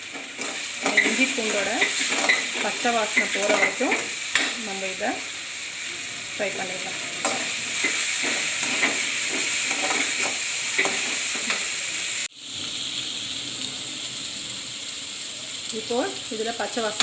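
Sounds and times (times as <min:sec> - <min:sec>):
spatula scraping a pan: 0:00.0 - 0:04.6, 0:07.2 - 0:11.6
onions sizzling in hot oil: 0:00.0 - 0:17.0.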